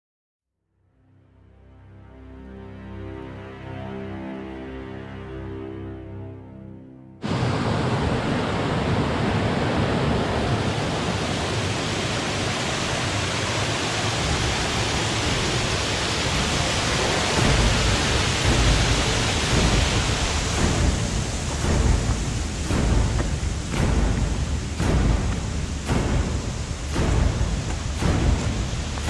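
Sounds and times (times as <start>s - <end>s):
water rushing: 7.2s - 29.0s
deep uneven rumble: 14.3s - 29.0s.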